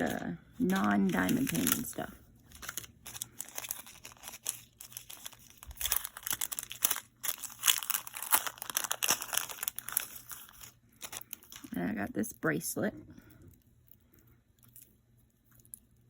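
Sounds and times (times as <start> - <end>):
plastic packaging crinkling: 0.0 - 11.9.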